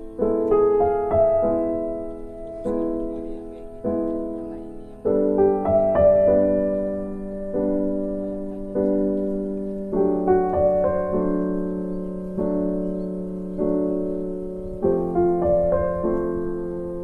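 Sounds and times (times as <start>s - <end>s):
slow electric piano chords: 0.0s - 17.0s.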